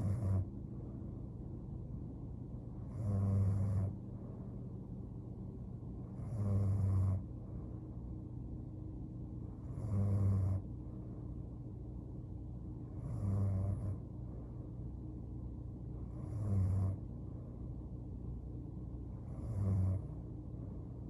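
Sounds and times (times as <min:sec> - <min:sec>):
woman snoring: 0:00.0 - 0:00.4, 0:02.8 - 0:03.9, 0:06.2 - 0:07.2, 0:09.7 - 0:10.6, 0:13.0 - 0:14.0, 0:16.1 - 0:17.0, 0:19.2 - 0:20.1
steady low hum: 0:00.0 - 0:21.0.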